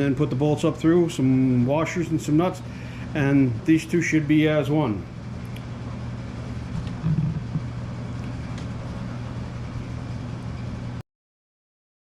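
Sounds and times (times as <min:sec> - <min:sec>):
low mechanical hum: 0:00.0 - 0:11.0.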